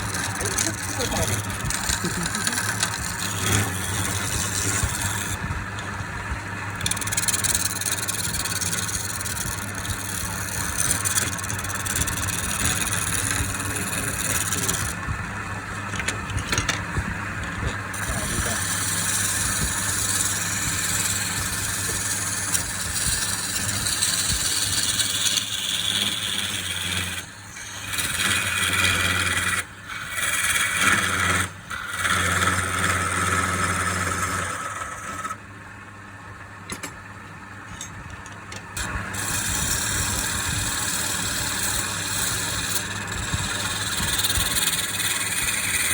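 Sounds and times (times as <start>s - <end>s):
power tool motor working wood: 0.0s - 15.2s, 17.4s - 35.4s, 38.8s - 45.9s.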